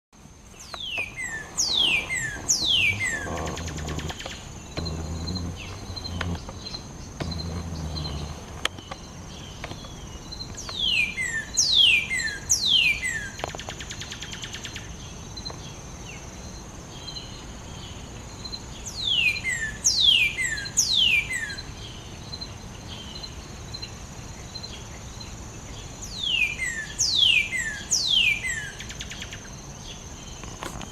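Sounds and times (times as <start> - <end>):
high insect drone: 0.2 - 10.8
bird singing down-slurred whistles: 0.6 - 8.4, 10.7 - 14.8, 26.0 - 29.4.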